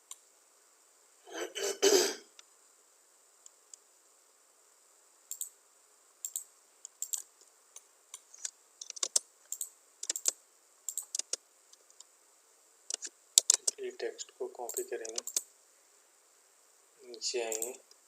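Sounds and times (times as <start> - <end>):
keyboard and mouse clicking: 5.3 - 5.5, 6.2 - 7.3, 8.4 - 12.1, 12.9 - 13.8, 14.7 - 15.5, 17.5 - 17.8.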